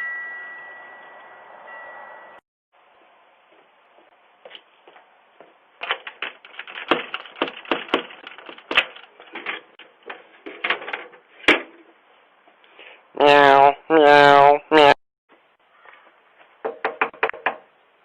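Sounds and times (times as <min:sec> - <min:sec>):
irregular clicking and crackling: 0:05.8 - 0:10.2.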